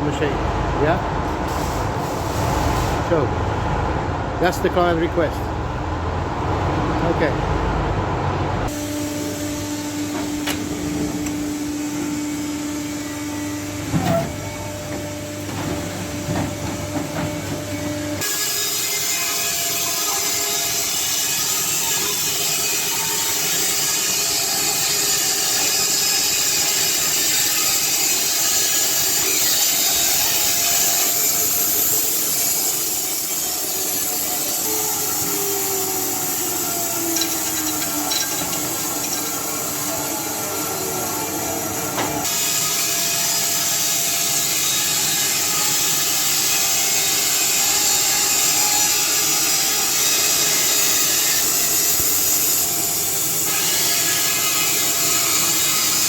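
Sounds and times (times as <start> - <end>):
sawmill motor hum: 23.8 - 42.8.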